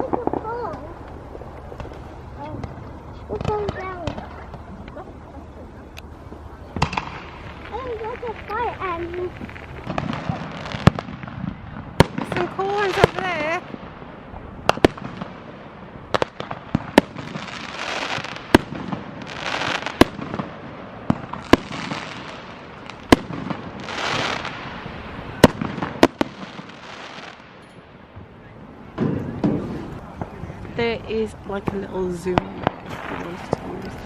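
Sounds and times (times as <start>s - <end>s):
fireworks bangs: 0.0s - 34.0s
fireworks hissing and crackling: 0.0s - 34.0s.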